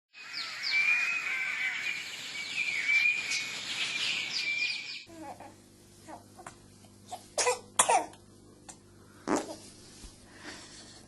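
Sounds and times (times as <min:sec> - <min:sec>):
birds chirping: 0:00.2 - 0:05.1.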